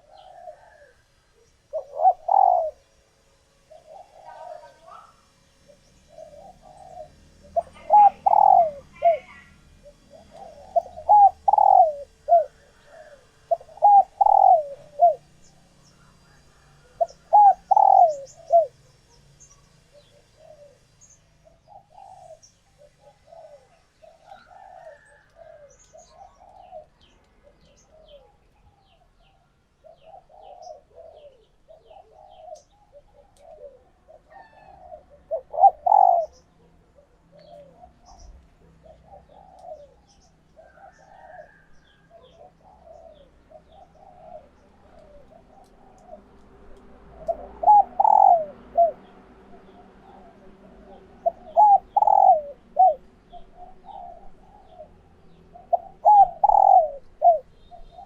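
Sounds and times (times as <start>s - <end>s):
dove cooing: 0.0s - 58.0s.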